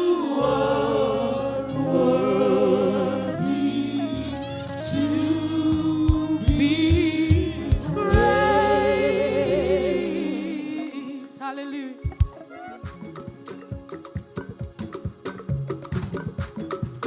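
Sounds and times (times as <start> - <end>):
gospel choir singing: 0.0 - 13.2
band with drums and bass: 4.0 - 8.8, 12.1 - 17.0.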